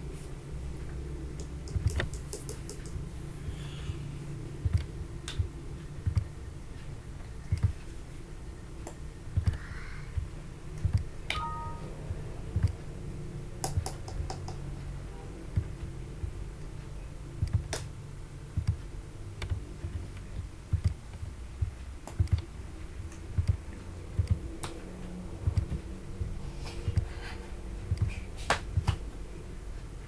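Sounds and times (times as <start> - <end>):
steady low hum: 0.0 - 30.0
keyboard and mouse clicks: 1.4 - 3.0, 7.5 - 7.9, 10.2 - 11.8, 12.5 - 12.8, 13.6 - 14.7, 17.4 - 17.9, 18.6 - 22.5, 23.1 - 24.8, 25.5 - 25.9
two-note beep: 11.3 - 11.9.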